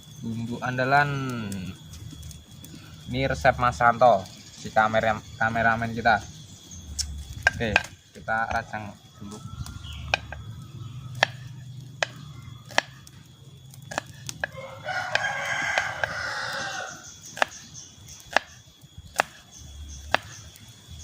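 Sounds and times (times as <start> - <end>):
rooster crowing: 8.6 - 17.6.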